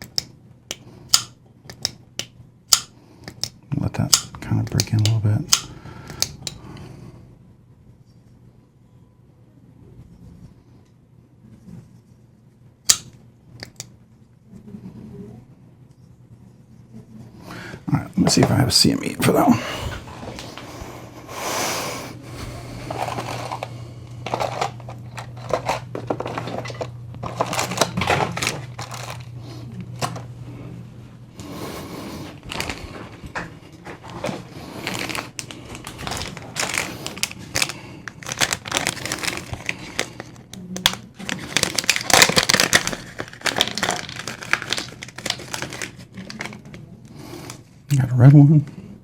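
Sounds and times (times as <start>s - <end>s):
small parts clicking and tapping: 0.0s - 6.6s, 12.9s - 13.9s
low hum: 22.0s - 46.1s
plastic bags crinkling: 22.8s - 29.4s, 32.2s - 46.8s.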